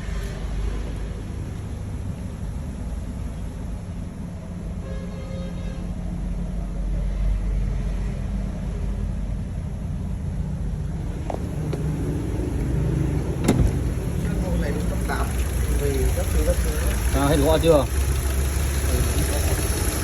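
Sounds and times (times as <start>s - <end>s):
car engine idling: 11.0s - 20.0s.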